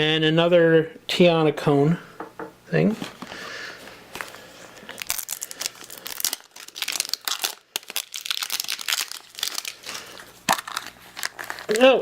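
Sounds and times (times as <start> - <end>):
toy wrapping crinkling and tearing: 4.1 - 12.0.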